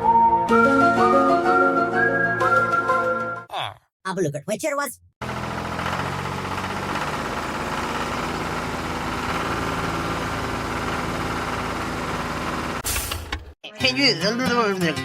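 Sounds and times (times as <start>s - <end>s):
engine idling: 5.2s - 13.5s.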